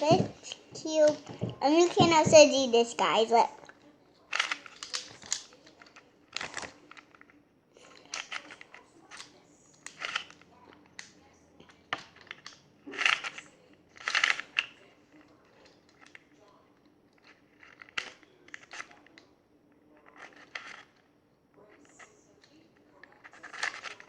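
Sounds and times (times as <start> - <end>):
plastic cube clicking: 4.3 - 7.2, 7.8 - 10.4, 12.0 - 14.8, 23.0 - 24.0.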